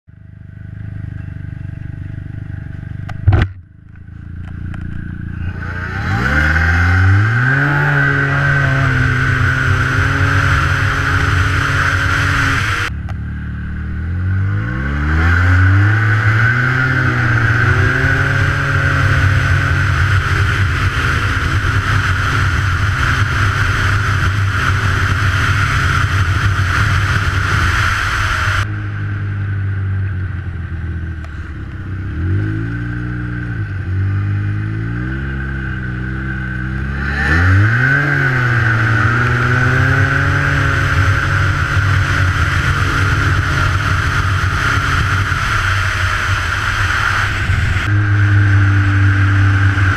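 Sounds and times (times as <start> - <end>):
engine accelerating hard: 0.4 - 49.9
sharp loud click: 3.0 - 3.7.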